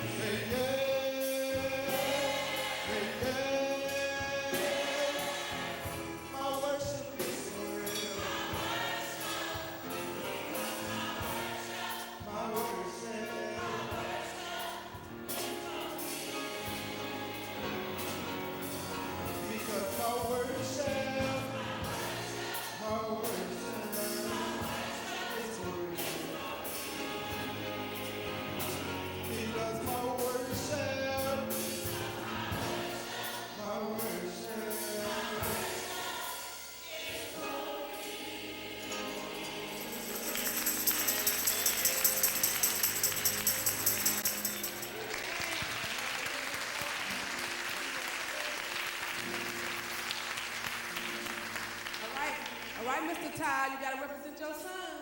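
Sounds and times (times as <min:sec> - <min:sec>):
gospel choir singing: 0:00.0 - 0:45.7
tambourine shaking: 0:39.0 - 0:45.8
band with drums: 0:39.7 - 0:45.2.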